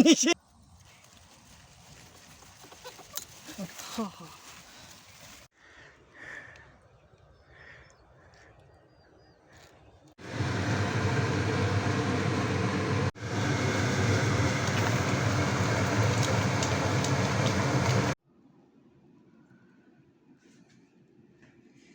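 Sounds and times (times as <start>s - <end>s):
loud rumbling noise: 10.2s - 18.2s.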